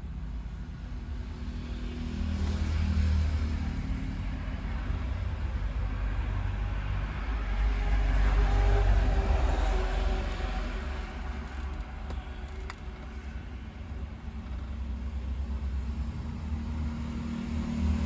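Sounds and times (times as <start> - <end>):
vehicle engine rumbling: 7.8 - 16.4.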